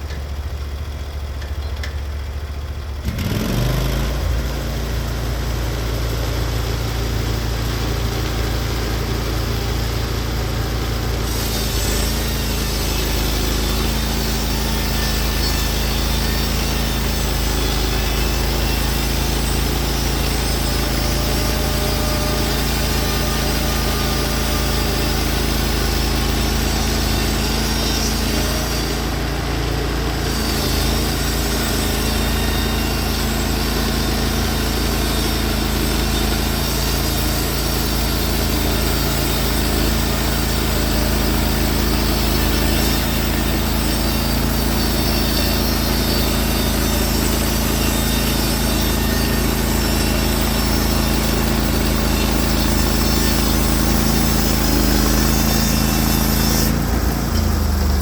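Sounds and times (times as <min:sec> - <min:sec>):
sawmill engine running: 0:00.0 - 0:58.0.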